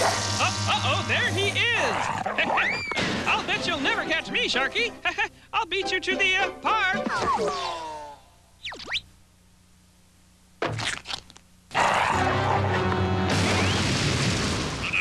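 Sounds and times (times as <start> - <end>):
music: 0.1 - 1.8, 3.3 - 7.4, 11.9 - 13.7
loud crashing commotion: 13.3 - 15.0.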